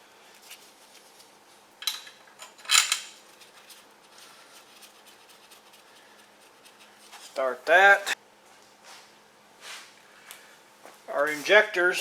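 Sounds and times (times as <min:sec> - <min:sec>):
metal tools clinking: 0:01.8 - 0:03.2.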